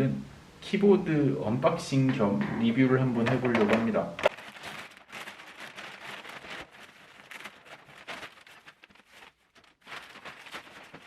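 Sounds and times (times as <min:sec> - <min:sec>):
packaging rustling and crinkling: 0:03.3 - 0:11.0.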